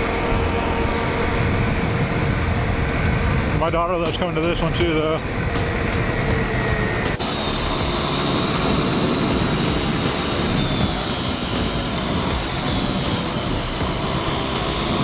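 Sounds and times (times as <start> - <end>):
wind rushing over camera: 0.0 - 7.2
motorcycle engine running: 0.0 - 15.0.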